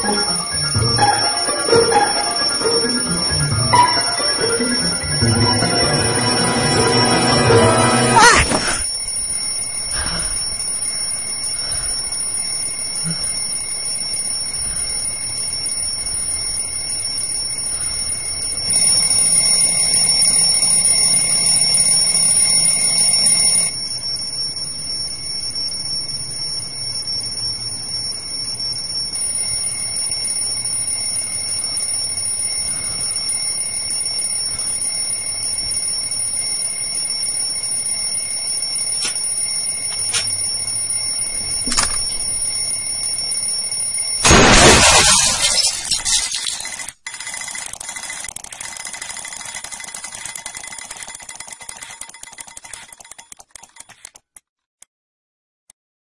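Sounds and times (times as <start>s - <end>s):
alarm clock bell ringing: 0.0s - 8.2s, 8.8s - 44.4s.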